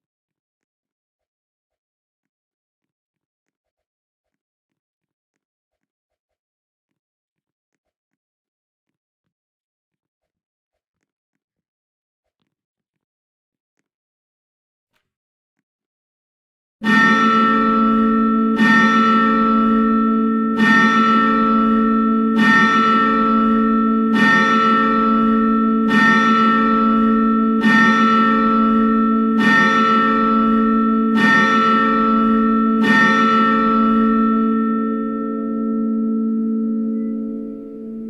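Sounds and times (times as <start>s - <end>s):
church bells ringing: 16.8s - 38.0s.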